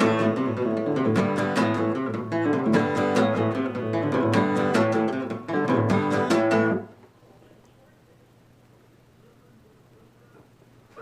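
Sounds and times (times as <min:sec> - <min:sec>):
guitar rapid picked notes: 0:00.0 - 0:06.9.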